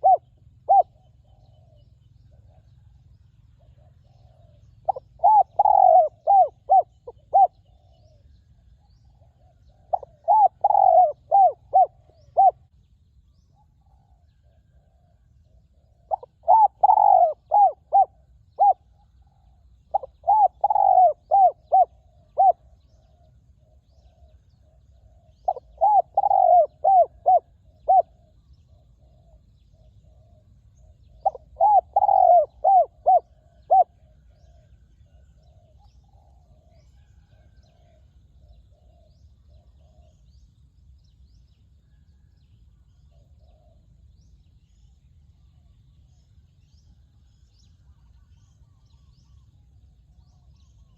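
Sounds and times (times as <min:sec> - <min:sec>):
loud dove coos: 0:00.0 - 0:02.9, 0:03.6 - 0:12.7, 0:13.6 - 0:40.3
faint dove cooing: 0:00.0 - 0:12.7, 0:13.5 - 0:40.4, 0:41.8 - 0:50.9.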